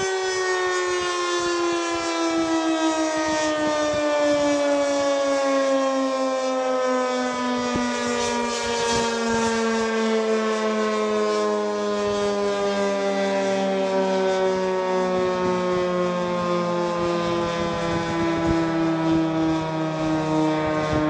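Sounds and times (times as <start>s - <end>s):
two-tone siren winding down: 0.0s - 21.0s.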